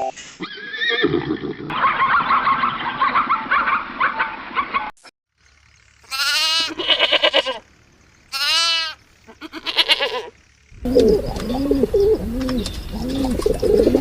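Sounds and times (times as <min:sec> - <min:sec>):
goats bleating: 0:06.0 - 0:07.7, 0:08.3 - 0:10.4
overlapping animal calls: 0:08.3 - 0:14.0.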